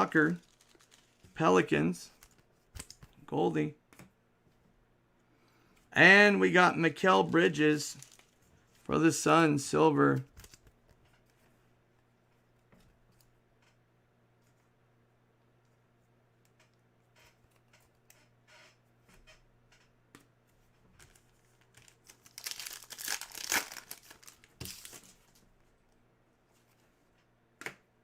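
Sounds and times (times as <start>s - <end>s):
wrapper tearing and crinkling: 0.3s - 1.3s, 7.9s - 8.4s, 21.7s - 25.4s.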